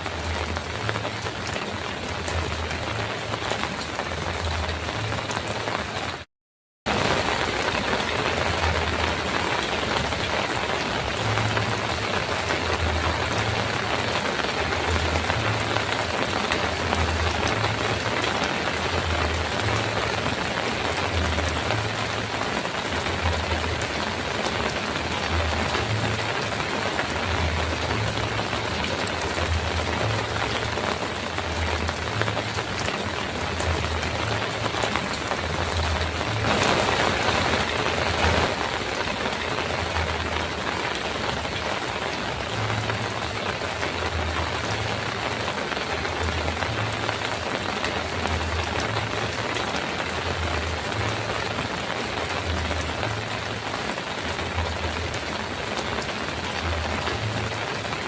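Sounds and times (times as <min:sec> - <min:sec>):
heavy rain on a metal roof: 0:00.0 - 0:06.3, 0:06.9 - 0:58.0.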